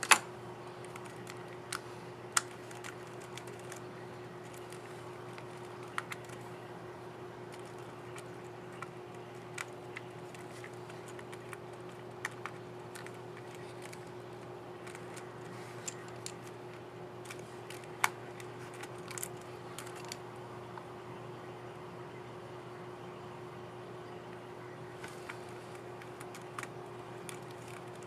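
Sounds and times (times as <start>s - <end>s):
plastic keycap clicks: 0.0s - 0.3s
steady background hum: 0.0s - 28.0s.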